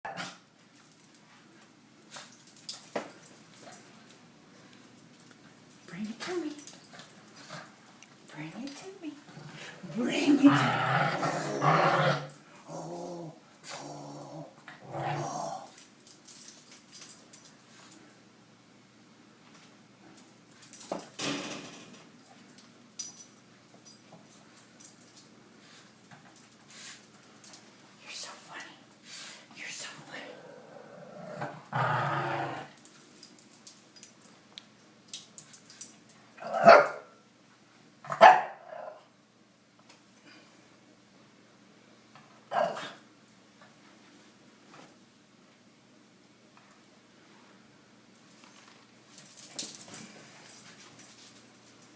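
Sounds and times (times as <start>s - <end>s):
dog growling: 9.3s - 15.8s, 30.2s - 32.8s
dog barking: 36.6s - 37.2s, 38.1s - 38.6s.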